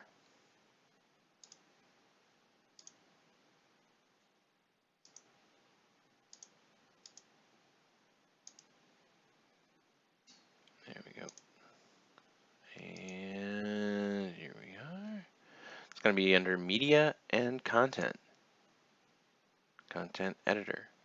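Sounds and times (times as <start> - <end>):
computer mouse clicks: 1.4 - 1.7, 2.8 - 3.0, 5.0 - 5.3, 6.3 - 7.3, 8.4 - 8.8, 10.3 - 11.5.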